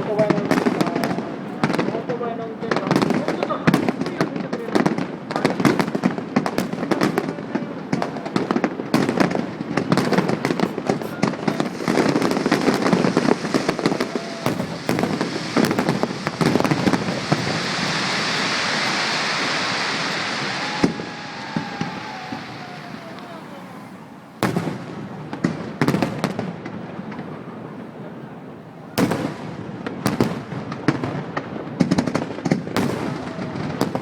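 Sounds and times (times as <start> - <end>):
fireworks bangs and cracks: 0.0 - 34.0
fireworks crackling hiss: 2.6 - 27.2.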